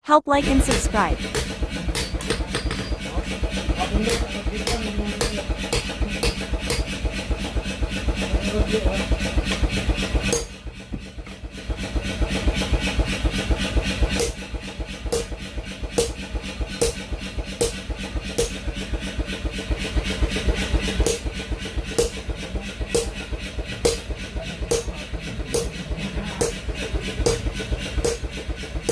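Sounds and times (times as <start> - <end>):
small engine running: 0.4 - 28.9.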